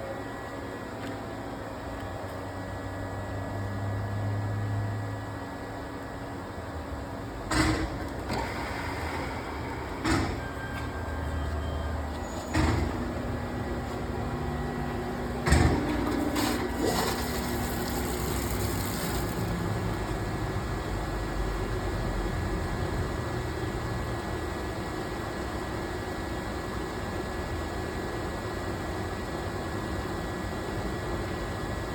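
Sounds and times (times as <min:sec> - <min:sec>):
sharp mechanical clunks: 0:07.5 - 0:08.5, 0:10.0 - 0:10.6, 0:12.4 - 0:13.2, 0:15.3 - 0:17.0
lathe machine hum: 0:08.2 - 0:10.1, 0:13.0 - 0:23.8.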